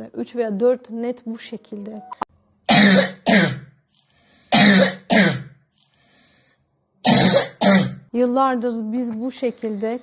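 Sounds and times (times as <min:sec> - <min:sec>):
child coughing harshly: 0:02.7 - 0:03.7, 0:04.6 - 0:05.6, 0:07.0 - 0:08.0
faint breaths: 0:04.0 - 0:04.6, 0:05.8 - 0:06.8.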